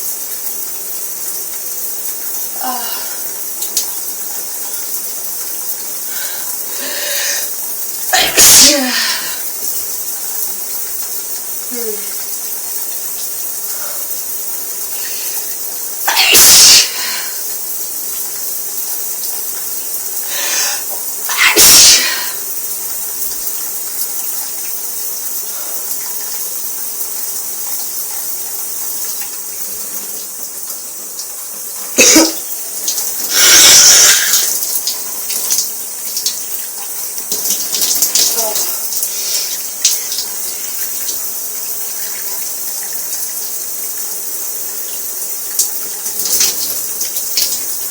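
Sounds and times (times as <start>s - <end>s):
shower running: 0.0s - 47.9s
person sneezing: 8.1s - 9.4s, 16.1s - 17.4s, 20.3s - 22.4s, 32.0s - 32.4s, 33.3s - 34.6s.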